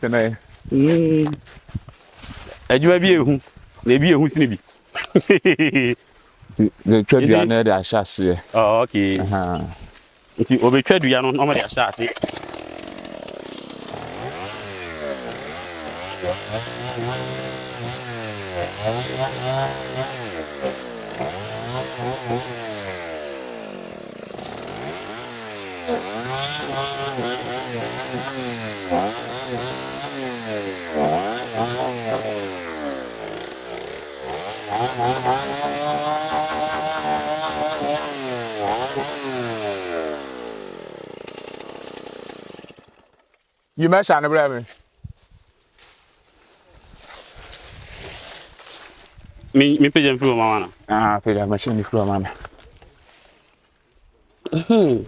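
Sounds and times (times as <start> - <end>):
chainsaw revving while cutting: 12.0 - 43.2.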